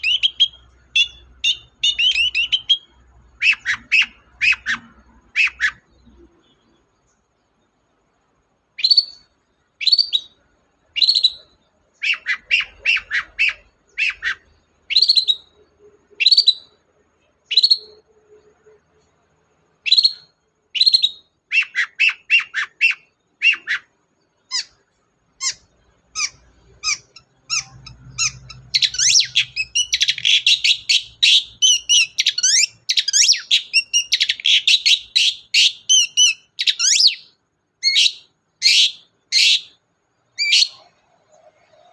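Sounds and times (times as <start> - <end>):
shrike singing: 0.0 - 6.8, 8.8 - 16.8, 25.4 - 39.8.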